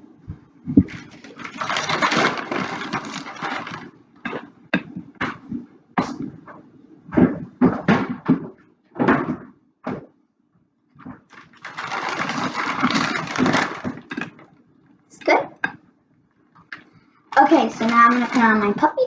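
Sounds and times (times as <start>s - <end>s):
plastic bag rustling: 0.8s - 4.5s, 11.1s - 14.6s, 17.3s - 19.0s.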